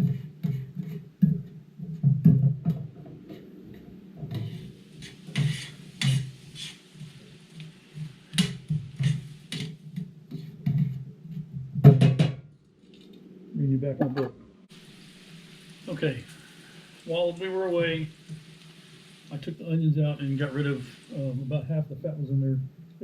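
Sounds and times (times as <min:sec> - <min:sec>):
stirring clicks and scrapes: 0:02.7 - 0:11.7
onions sizzling in a pan: 0:03.3 - 0:11.0, 0:14.7 - 0:21.8.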